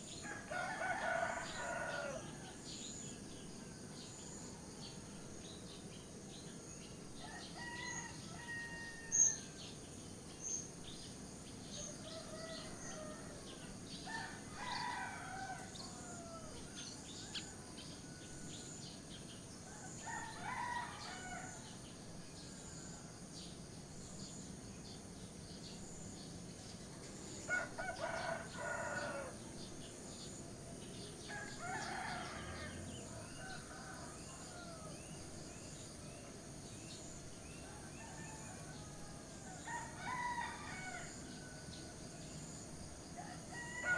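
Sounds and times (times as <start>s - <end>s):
steady background hiss: 0.0s - 43.9s
roosters crowing: 0.2s - 2.6s, 7.2s - 9.4s, 14.1s - 18.6s, 19.7s - 21.6s, 27.4s - 29.4s, 31.2s - 35.0s, 37.6s - 41.8s, 43.1s - 43.9s.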